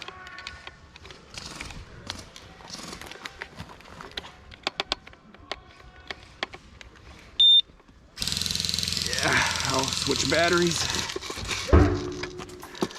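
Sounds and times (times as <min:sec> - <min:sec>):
clicks and taps of gear handling: 0:00.0 - 0:07.2.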